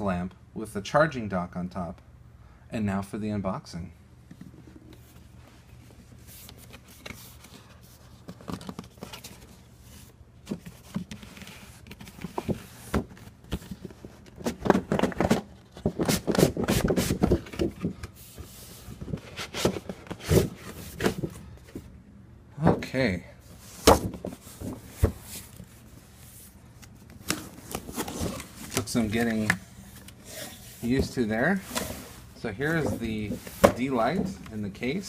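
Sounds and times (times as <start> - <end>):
packaging scraping and rustling: 27.2 - 35.0.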